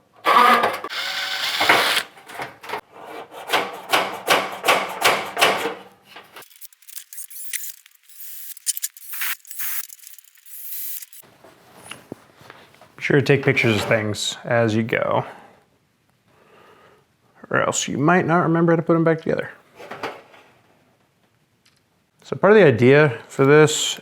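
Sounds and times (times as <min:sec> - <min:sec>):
hand tool scraping painted metal: 0:02.9 - 0:07.7.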